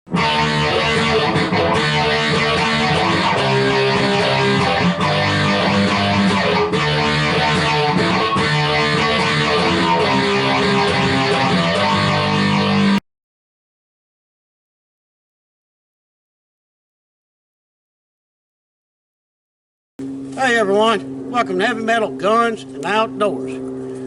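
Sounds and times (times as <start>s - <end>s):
guitar-led intro music: 0.1s - 13.0s.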